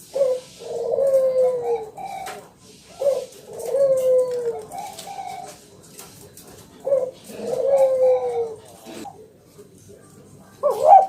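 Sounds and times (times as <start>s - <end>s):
dove cooing: 0.0s - 9.3s, 10.5s - 11.0s.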